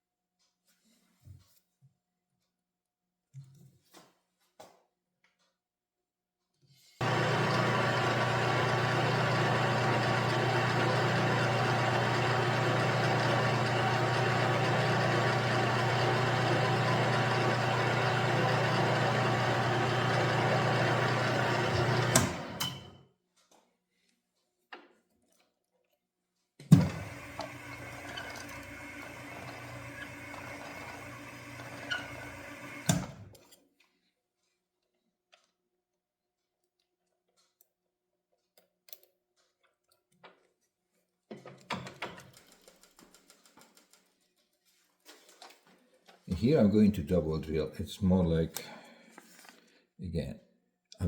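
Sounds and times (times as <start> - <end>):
milling machine spindle humming: 7.0 - 22.9, 26.7 - 33.2.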